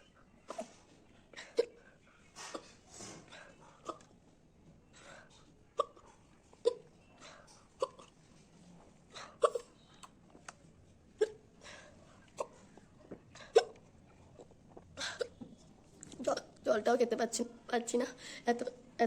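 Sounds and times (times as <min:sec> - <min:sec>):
woman hiccuping: 0:05.8 - 0:06.0, 0:07.8 - 0:08.1, 0:09.4 - 0:09.7, 0:13.5 - 0:13.8.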